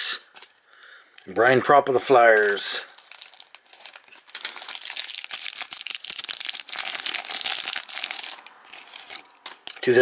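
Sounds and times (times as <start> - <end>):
wrapper crinkling as torn open: 2.4 - 9.9.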